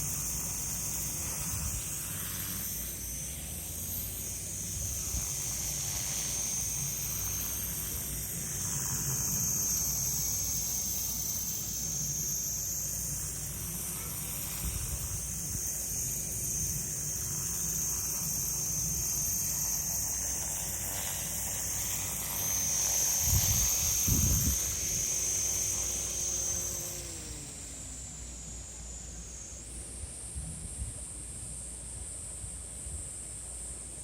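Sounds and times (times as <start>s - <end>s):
toy helicopter rotor whine: 0.0s - 34.0s
wind buffeting microphone: 23.2s - 25.1s.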